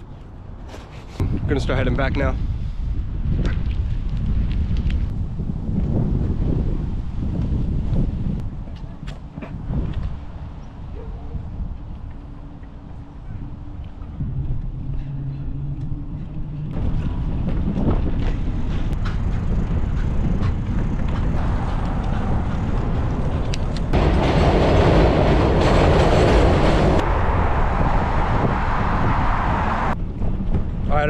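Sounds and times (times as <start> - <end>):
road riding rumble: 0.0 - 31.0
wind on microphone: 0.9 - 31.0.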